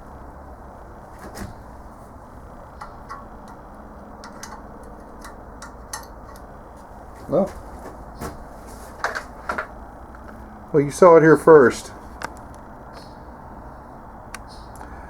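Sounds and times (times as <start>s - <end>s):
steady low hum: 0.0s - 15.0s
light metal clicks and taps: 2.7s - 6.9s.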